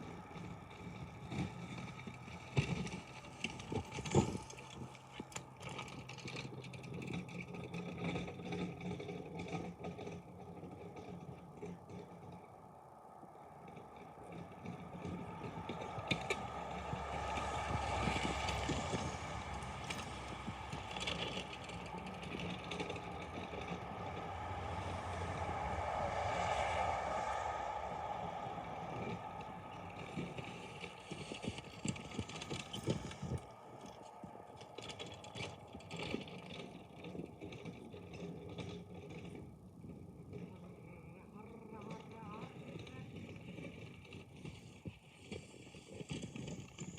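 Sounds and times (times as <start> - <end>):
snow plow vehicle engine under load: 0.0 - 46.9
noisy rush: 10.6 - 37.8.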